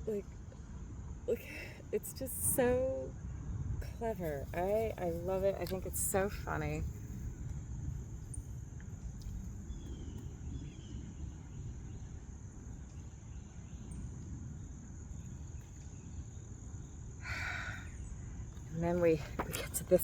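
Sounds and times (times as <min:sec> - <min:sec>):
crickets droning: 0:00.0 - 0:20.0
low rumble: 0:00.0 - 0:20.0
faint bird chirps: 0:08.2 - 0:20.0.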